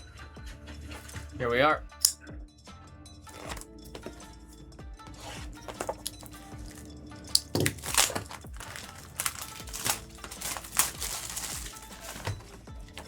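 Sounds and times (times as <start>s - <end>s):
faint background music: 0.0s - 13.0s
plastic packaging crinkling: 3.4s - 4.1s, 5.2s - 13.0s.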